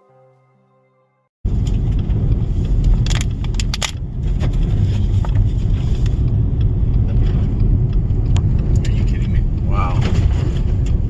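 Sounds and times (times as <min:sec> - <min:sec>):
sharp clicks and ticks: 0:01.5 - 0:09.8
wind buffeting microphone: 0:01.5 - 0:11.0.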